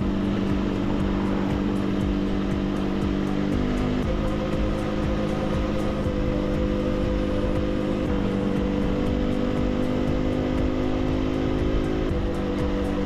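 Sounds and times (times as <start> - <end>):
low wind rumble: 0.0 - 4.2
motorcycle engine cruising: 0.0 - 13.0.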